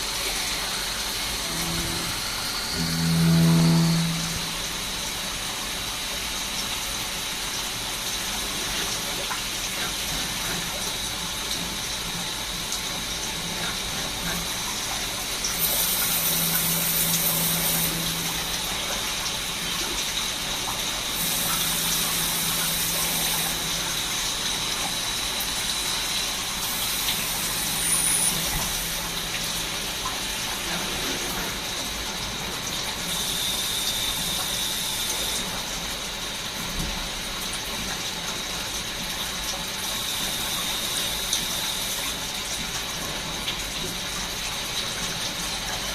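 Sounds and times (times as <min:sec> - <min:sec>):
lathe machining: 0:00.0 - 0:06.4, 0:10.3 - 0:35.8, 0:39.7 - 0:42.4.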